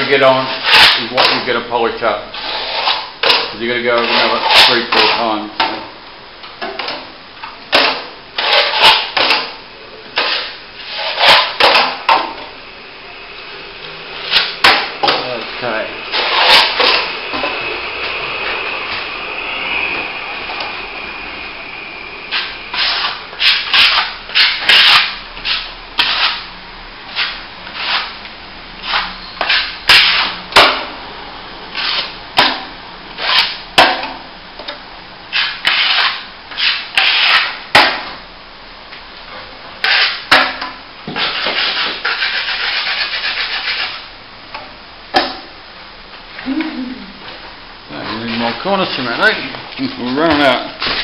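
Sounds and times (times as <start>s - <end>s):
trowel scraping wet plaster: 2.3s - 5.3s, 7.8s - 9.5s, 10.2s - 11.9s, 16.1s - 17.1s, 22.3s - 26.5s, 27.1s - 28.2s, 31.8s - 32.5s, 35.3s - 37.6s, 39.8s - 40.3s, 41.2s - 44.0s.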